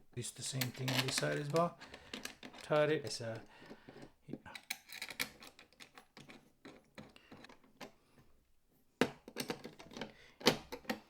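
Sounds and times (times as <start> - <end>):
small parts clicking and tapping: 0.5 - 8.0.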